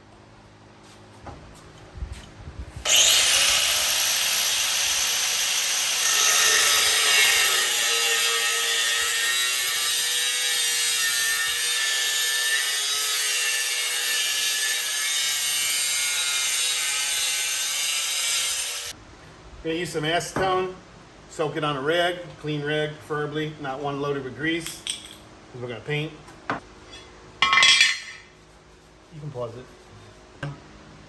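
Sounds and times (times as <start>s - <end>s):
angle grinder grinding steel: 2.9s - 18.9s.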